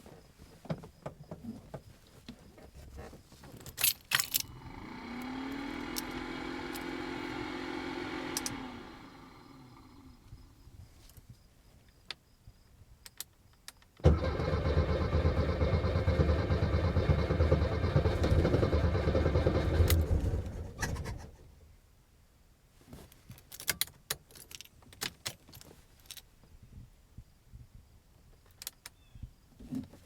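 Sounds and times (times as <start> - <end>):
engine cranking on starter: 4.2 - 10.5, 14.0 - 21.4.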